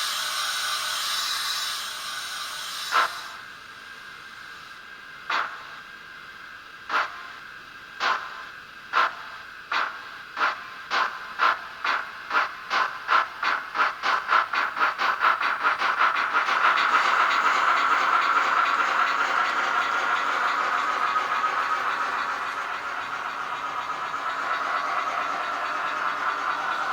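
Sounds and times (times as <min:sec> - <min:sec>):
model steam locomotive chuffs: 0:00.0 - 0:26.9.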